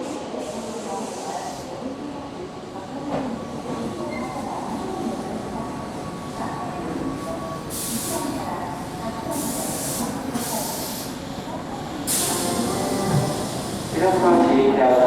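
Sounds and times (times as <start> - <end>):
electric train rumbling: 2.1 - 15.0
air brake hiss: 12.1 - 13.9.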